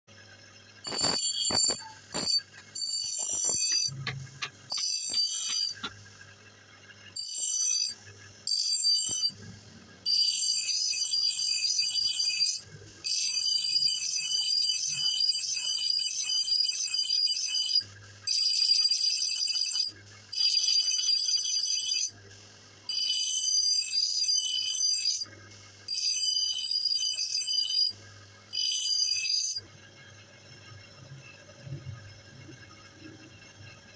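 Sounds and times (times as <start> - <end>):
axe blade grinding on abrasive: 0.8 - 5.9.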